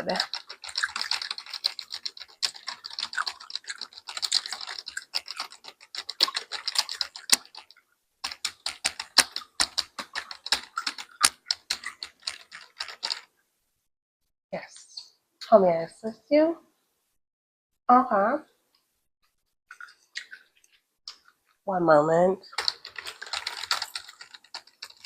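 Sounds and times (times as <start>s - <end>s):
keyboard typing: 0.0s - 13.3s, 22.4s - 25.0s.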